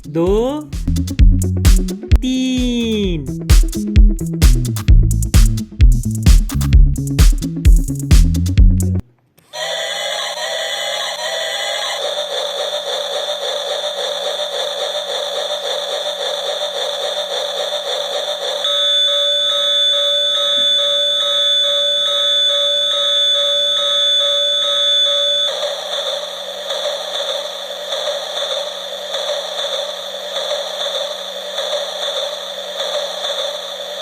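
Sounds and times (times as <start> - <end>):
toy train electronic buzzing: 9.5 - 34.0.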